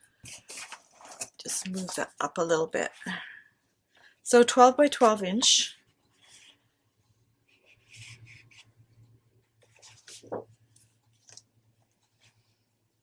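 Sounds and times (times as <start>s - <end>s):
paper sheets rustling: 0.2s - 2.1s, 9.7s - 10.5s.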